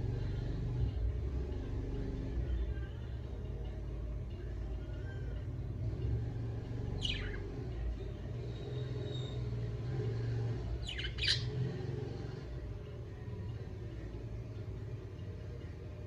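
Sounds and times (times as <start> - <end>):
budgerigar chirping: 7.0 - 7.4, 10.8 - 11.6.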